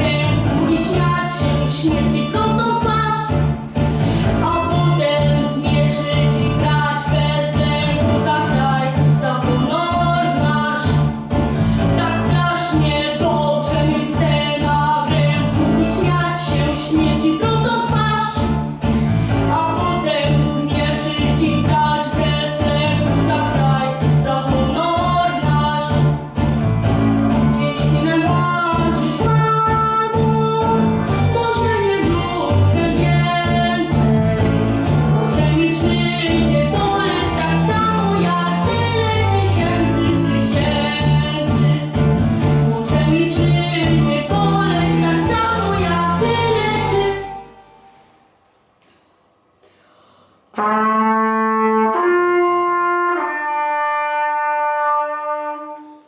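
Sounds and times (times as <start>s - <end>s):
boy singing: 0.0s - 3.3s, 4.4s - 11.0s, 12.0s - 18.4s, 19.5s - 26.0s, 27.6s - 34.6s, 35.2s - 41.9s, 42.7s - 47.4s
instrumental backing track: 0.0s - 48.2s.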